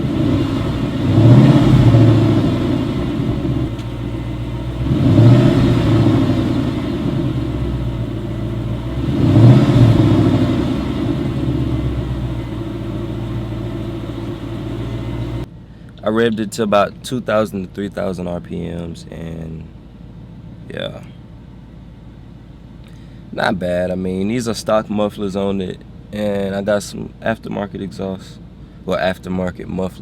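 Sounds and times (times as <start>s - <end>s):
car engine revving: 0.0s - 15.5s.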